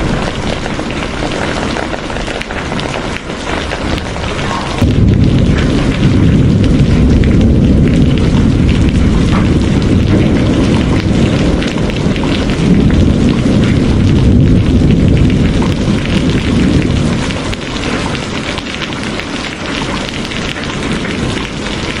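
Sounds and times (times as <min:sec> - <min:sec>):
heavy rain pouring: 0:00.0 - 0:22.0
deep low rumble: 0:03.7 - 0:17.6.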